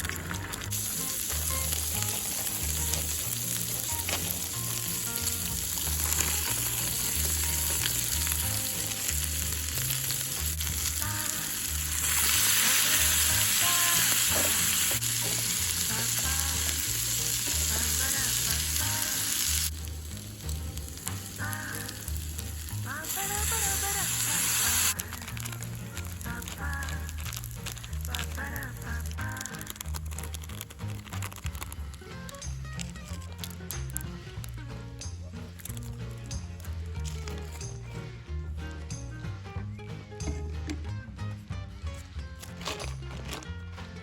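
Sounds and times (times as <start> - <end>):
food sizzling on a griddle: 0.0 - 31.2.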